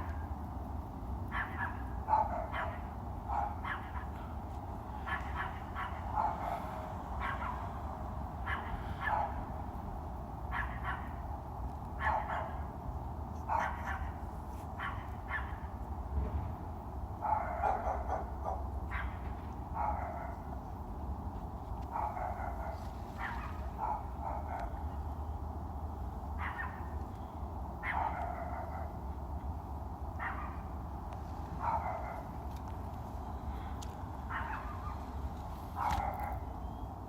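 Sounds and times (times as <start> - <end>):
steady low rumble: 0.0 - 36.6
dog barking: 1.3 - 4.4, 5.0 - 7.8, 8.4 - 9.5, 10.5 - 11.2, 12.0 - 12.7, 13.4 - 14.2, 14.8 - 15.7, 17.2 - 20.6, 21.9 - 24.8, 26.4 - 27.0, 27.8 - 29.0, 30.2 - 30.8, 31.6 - 32.3, 34.3 - 35.1, 35.8 - 36.5.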